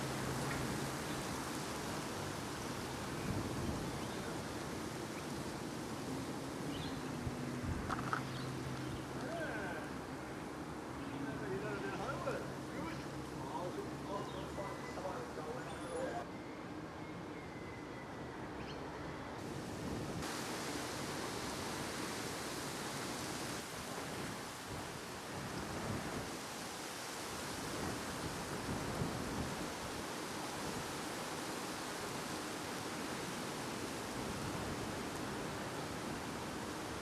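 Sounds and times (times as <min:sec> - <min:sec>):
wind on microphone: 0:03.0 - 0:04.8, 0:27.4 - 0:30.0.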